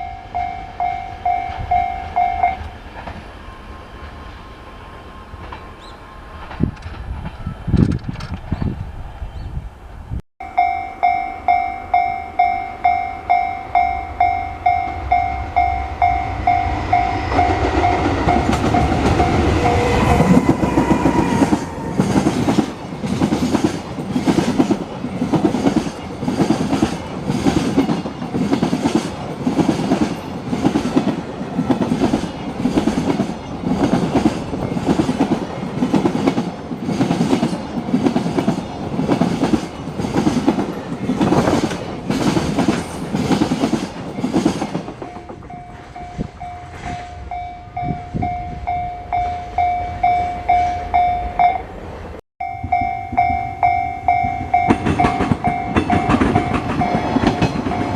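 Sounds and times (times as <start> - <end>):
level-crossing warning bell: 0.0 - 3.8, 10.4 - 23.2, 43.9 - 51.8, 52.4 - 57.9
train wheels clacking on rails: 11.0 - 48.4, 52.5 - 57.9.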